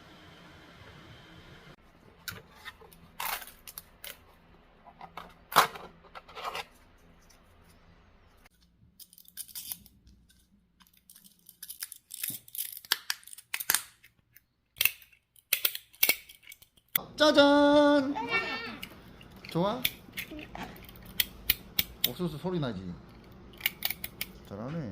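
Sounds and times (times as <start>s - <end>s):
plastic parts crackling and clicking: 2.2s - 4.3s, 8.5s - 17.0s
low steady hum: 17.0s - 24.9s.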